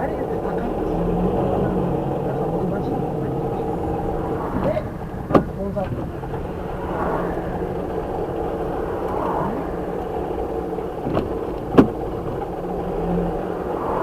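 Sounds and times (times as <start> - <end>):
car road and engine noise: 0.0 - 14.0.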